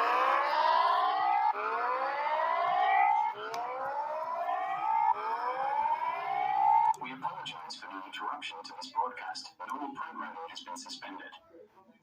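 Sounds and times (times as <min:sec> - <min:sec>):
rising siren wail: 0:00.0 - 0:07.0.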